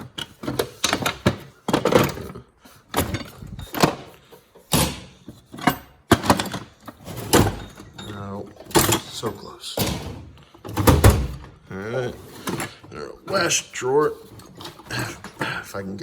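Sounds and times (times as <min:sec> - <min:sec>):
metal drawer slamming: 0:02.9 - 0:08.0, 0:08.6 - 0:11.6.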